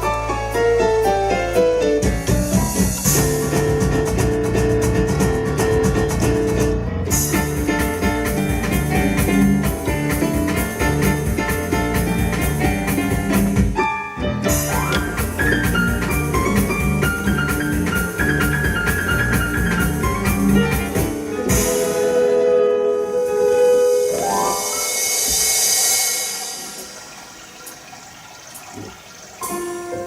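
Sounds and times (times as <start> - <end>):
electronic organ dance music: 14.5 - 20.8.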